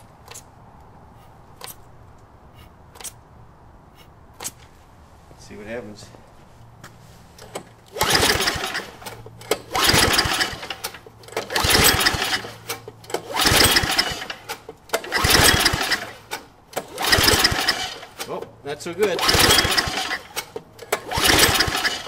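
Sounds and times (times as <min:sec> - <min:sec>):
engine turning over: 0:07.4 - 0:18.4, 0:19.0 - 0:22.0
engine recoil starter pulls: 0:07.4 - 0:22.0.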